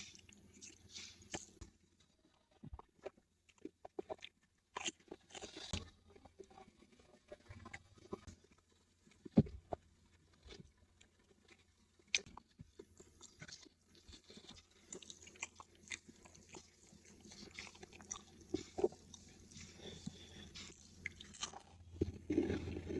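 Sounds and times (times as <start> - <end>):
person chewing crunchy food: 0.0 - 1.7, 2.5 - 6.0, 10.4 - 22.9.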